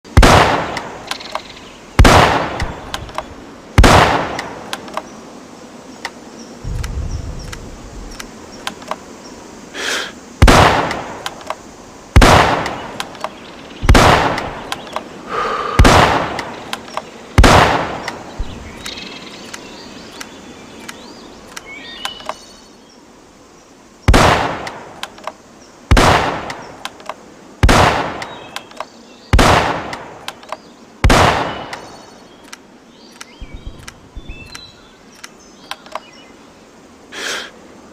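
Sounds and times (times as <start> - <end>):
rifle shots echoing: 0.2 - 0.9, 2.0 - 2.8, 3.8 - 4.4, 10.4 - 11.2, 12.2 - 12.7, 13.8 - 14.5, 15.8 - 16.4, 17.4 - 18.0, 27.6 - 28.2, 29.4 - 30.1, 31.0 - 31.7
small rifle clicks: 2.6 - 3.3, 3.9 - 5.1, 6.0 - 9.0, 10.8 - 11.6, 14.2 - 15.1, 18.0 - 22.4, 24.6 - 25.4, 26.4 - 27.2, 28.2 - 36.1.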